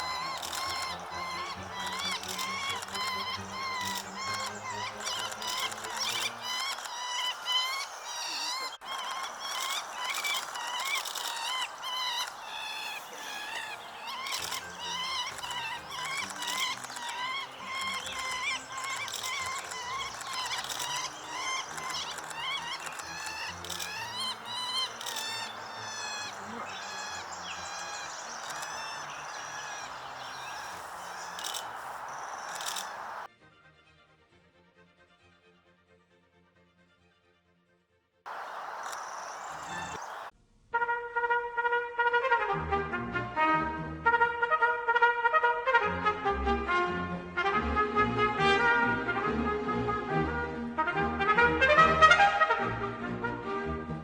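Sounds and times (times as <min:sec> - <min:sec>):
birds singing and chirping: 0:00.0 - 0:33.3, 0:38.3 - 0:40.3.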